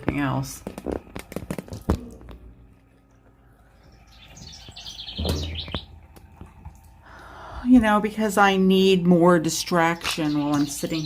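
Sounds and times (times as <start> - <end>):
bird chirping: 3.6 - 6.0, 9.9 - 11.0.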